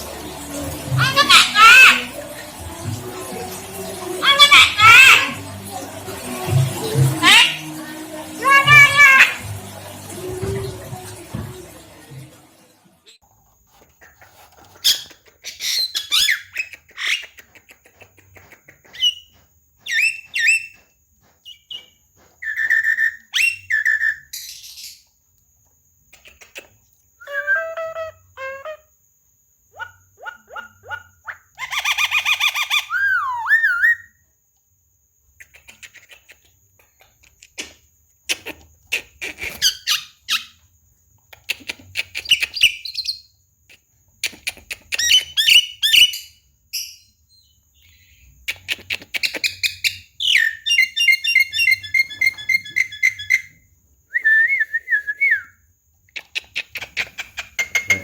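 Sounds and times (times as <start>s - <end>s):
bird whistling and chattering: 14.8s - 17.4s, 18.8s - 20.8s, 21.5s - 24.8s, 31.6s - 34.1s, 47.9s - 53.5s.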